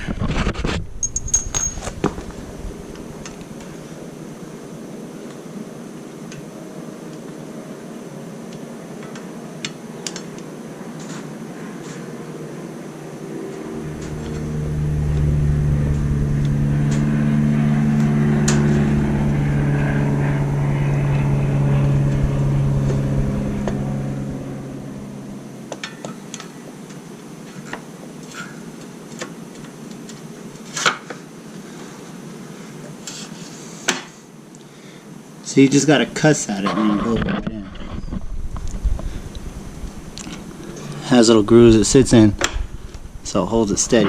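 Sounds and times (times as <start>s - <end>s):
low engine-like hum: 0.8s - 5.2s, 12.3s - 25.8s, 37.8s - 44.0s.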